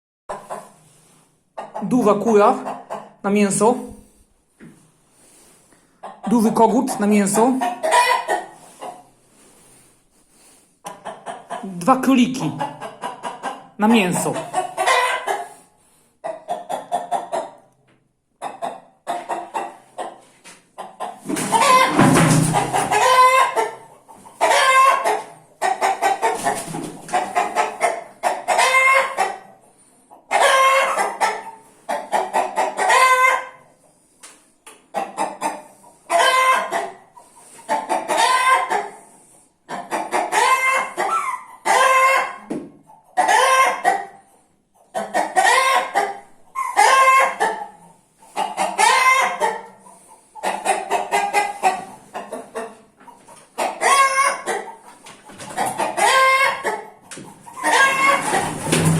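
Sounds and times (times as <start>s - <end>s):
hens clucking: 0.3s - 58.9s
roosters crowing: 21.4s - 23.7s, 24.4s - 26.5s, 28.5s - 29.4s, 30.4s - 31.2s, 36.2s - 36.8s, 40.3s - 42.4s, 53.7s - 54.6s, 55.5s - 56.8s, 57.5s - 58.9s.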